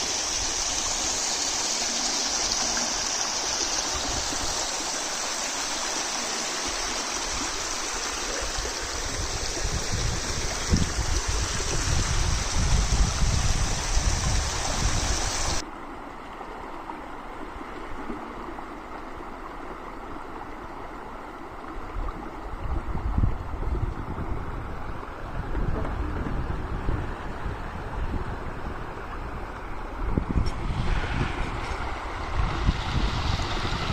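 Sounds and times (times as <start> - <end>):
running water rushing: 0.0 - 33.9
wind buffeting microphone: 8.3 - 15.6, 21.9 - 33.9.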